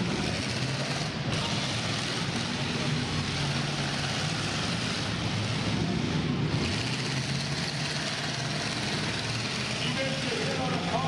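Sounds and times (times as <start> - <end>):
car engines running together: 0.0 - 11.0.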